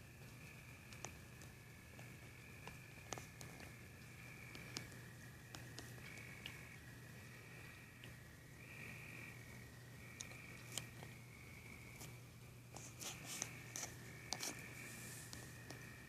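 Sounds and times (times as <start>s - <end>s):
crickets trilling: 0.0s - 16.0s
low steady hum: 0.0s - 16.0s
light ticks: 0.2s - 6.6s.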